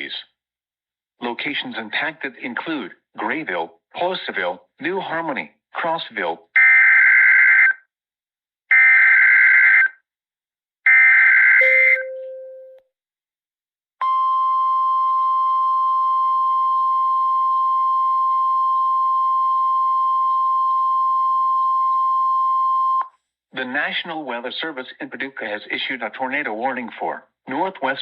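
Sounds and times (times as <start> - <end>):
steady alarm tone: 10.9 - 12.8.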